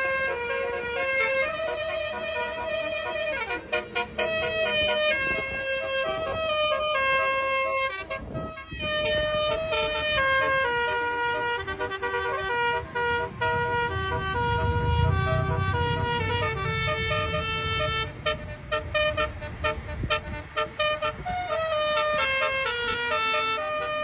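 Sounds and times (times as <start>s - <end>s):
multi-tone bus horn tune: 0.0s - 24.0s
low rumble: 11.8s - 20.3s.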